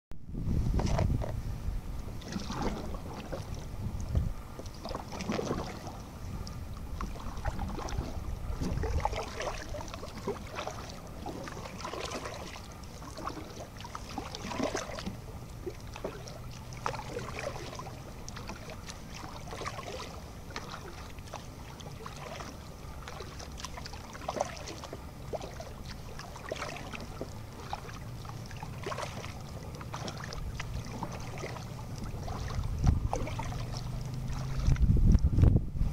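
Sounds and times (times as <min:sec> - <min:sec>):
wind rumble on microphone: 0:00.2 - 0:13.4, 0:30.0 - 0:35.9
paddle splashing in water: 0:00.6 - 0:35.9
water dripping from paddle: 0:02.0 - 0:35.3.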